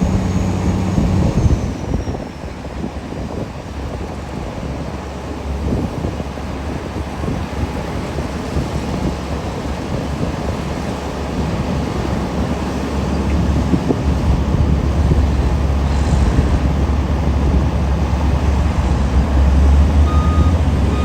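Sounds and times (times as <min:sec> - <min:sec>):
diesel engines rumbling: 0:00.0 - 0:21.0
wind on microphone: 0:00.0 - 0:21.0.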